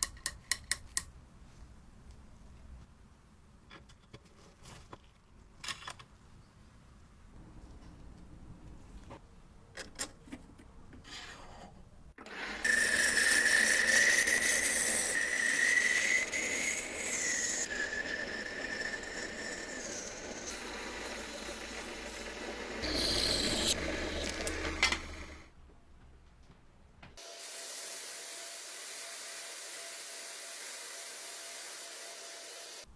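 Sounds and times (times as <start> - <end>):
power tool whining: 12.2 - 25.4.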